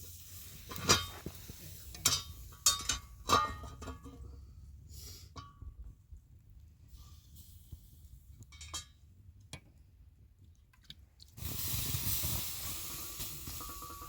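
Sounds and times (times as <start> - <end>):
loud hiss: 11.4 - 14.0.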